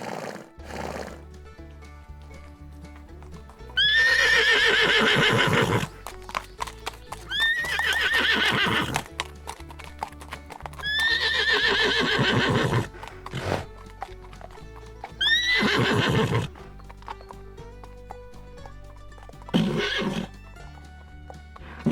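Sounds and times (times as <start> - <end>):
horse whinnying: 0.0 - 1.3, 3.7 - 6.4, 7.2 - 9.2, 9.8 - 17.4, 19.3 - 21.9
background music: 0.0 - 21.9
hoofbeats clip-clopping: 0.0 - 21.9.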